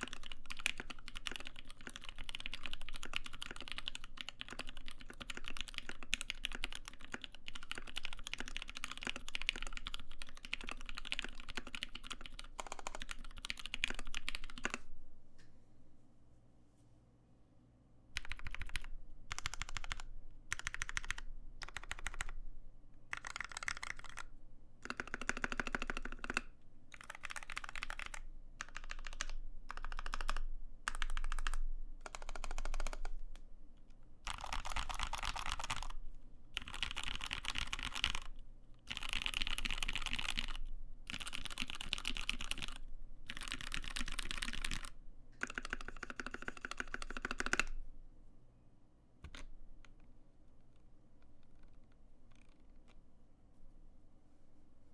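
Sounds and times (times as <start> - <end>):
mechanical keyboard typing: 0.0 - 14.8, 18.2 - 22.4, 23.1 - 33.1, 34.2 - 36.0, 36.6 - 38.3, 38.9 - 47.7.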